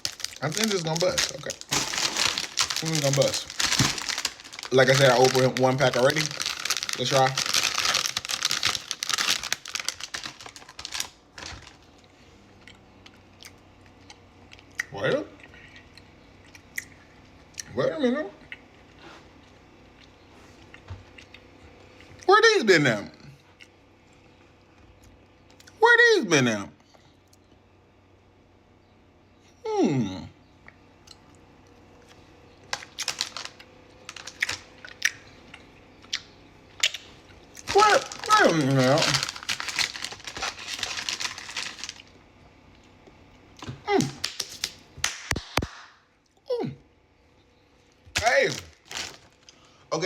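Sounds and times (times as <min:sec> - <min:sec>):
plastic wrapper crinkling: 0:00.0 - 0:12.0, 0:32.7 - 0:35.0, 0:37.6 - 0:42.2, 0:44.0 - 0:45.7, 0:48.1 - 0:49.6.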